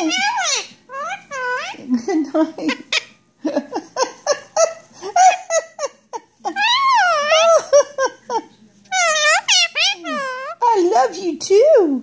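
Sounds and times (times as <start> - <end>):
parrot chattering: 0.0 - 1.9, 2.5 - 3.2, 6.5 - 7.8, 8.9 - 10.6.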